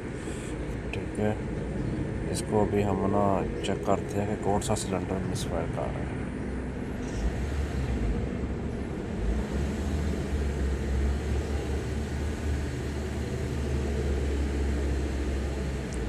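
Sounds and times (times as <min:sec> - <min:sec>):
car engine idling: 0:08.2 - 0:16.0.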